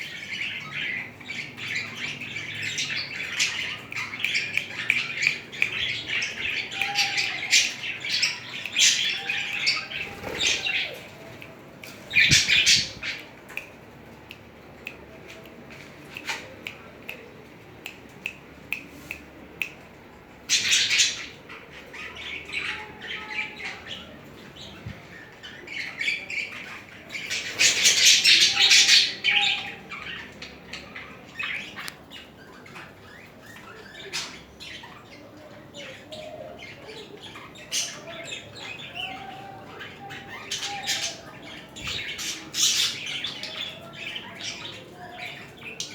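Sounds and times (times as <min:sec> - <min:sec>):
budgerigars chattering: 0:12.1 - 0:13.3.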